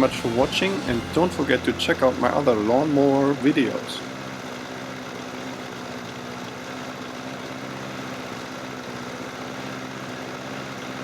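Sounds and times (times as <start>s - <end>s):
lawn mower engine running: 0.0s - 11.0s.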